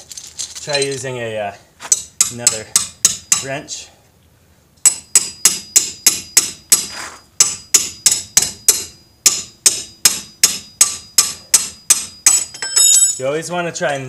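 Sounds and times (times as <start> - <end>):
metal tool striking wrench: 1.9 - 3.5, 4.8 - 13.3.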